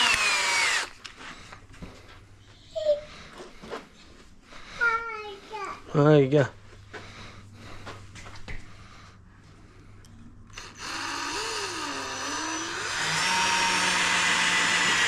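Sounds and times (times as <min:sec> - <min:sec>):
power drill running: 0:00.0 - 0:01.0, 0:10.5 - 0:15.0.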